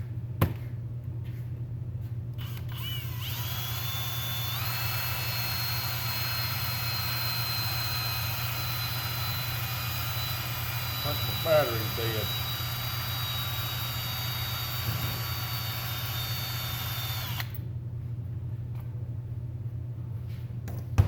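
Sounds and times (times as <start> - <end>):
cordless drill whining: 2.4 - 17.6.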